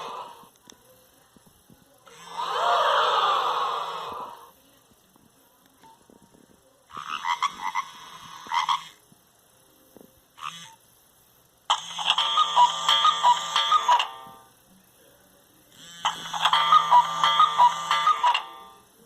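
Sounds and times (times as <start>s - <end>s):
monophonic phone ringtone: 11.8s - 14.4s, 15.9s - 18.8s.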